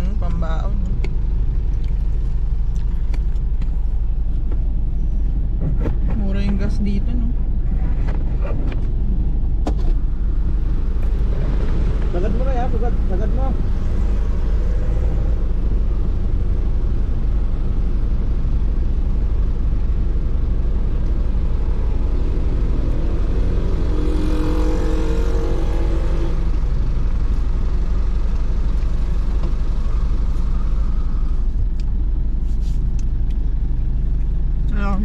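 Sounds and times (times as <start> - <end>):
motor vehicle engine rumbling: 0.0 - 35.0.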